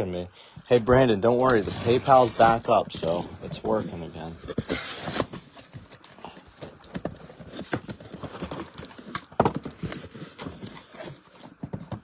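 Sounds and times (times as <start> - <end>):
cardboard boxes knocking on table: 6.6 - 10.8, 11.4 - 12.0.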